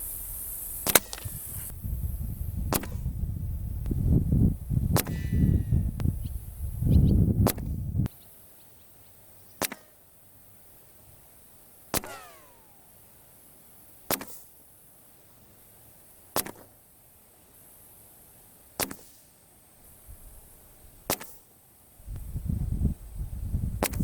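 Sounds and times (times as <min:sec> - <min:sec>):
air rifle shots: 0:00.8 - 0:01.4, 0:02.7 - 0:03.1, 0:04.9 - 0:05.7, 0:07.4 - 0:07.8, 0:09.6 - 0:10.0, 0:11.9 - 0:12.8, 0:14.1 - 0:14.5, 0:18.8 - 0:19.2, 0:23.8 - 0:24.0.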